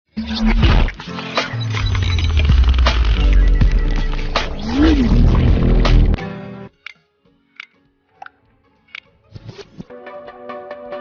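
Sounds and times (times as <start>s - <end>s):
loud background music: 0.7s - 7.7s.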